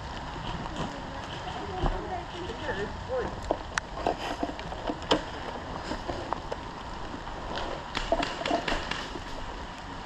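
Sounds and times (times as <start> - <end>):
wind rumbling on microphone: 0.0 - 10.0
sharp clicks and knocks: 7.5 - 9.4.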